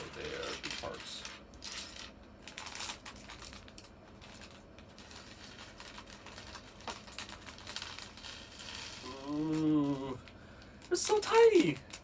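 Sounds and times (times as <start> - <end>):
plastic pieces clicking and clattering: 0.0 - 12.0.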